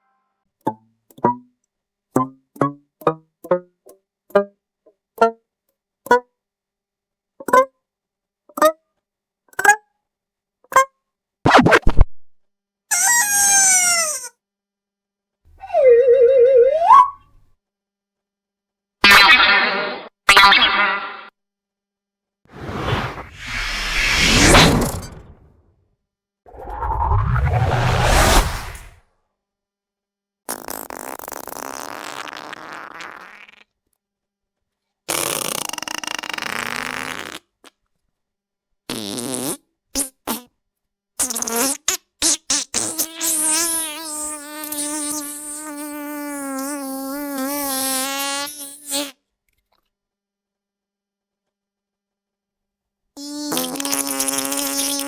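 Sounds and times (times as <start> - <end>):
cartoon whoosh: 22.6 - 25.5, 26.5 - 29.0
low rumble with rapid crackle: 22.8 - 25.4, 26.6 - 29.0.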